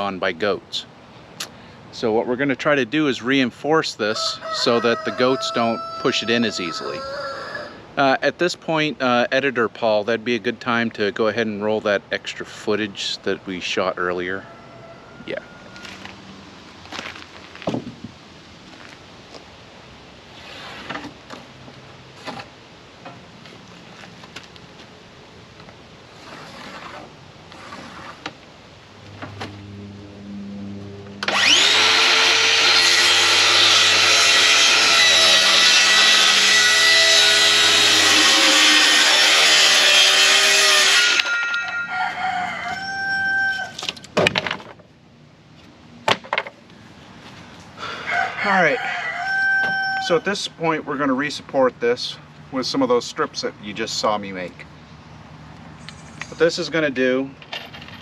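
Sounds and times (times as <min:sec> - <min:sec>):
rooster crowing: 0:04.1 - 0:07.8, 0:14.4 - 0:16.1, 0:41.3 - 0:43.8, 0:47.8 - 0:50.2
power saw cutting wood: 0:29.1 - 0:41.8.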